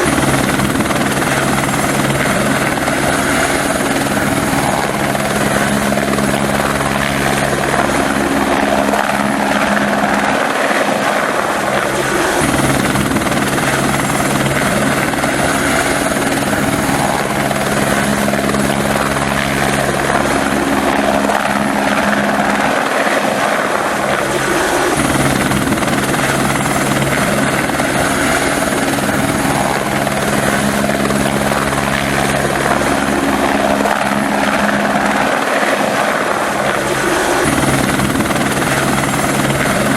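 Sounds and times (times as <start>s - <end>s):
helicopter flying: 0.0s - 39.9s.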